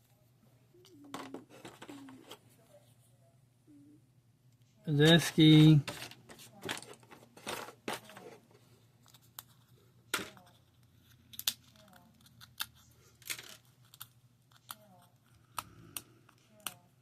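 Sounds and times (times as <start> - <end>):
game pieces clicking and rustling: 10.1 - 16.0.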